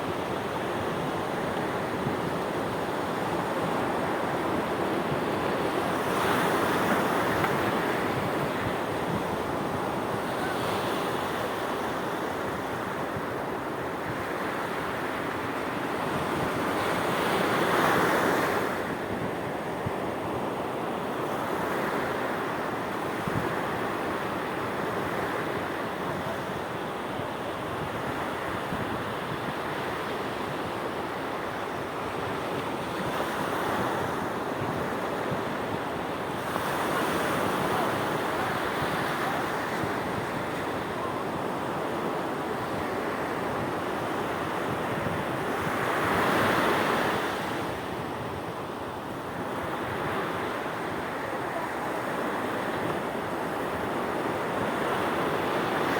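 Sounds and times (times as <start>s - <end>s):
sea waves breaking on shore: 0.0s - 55.9s.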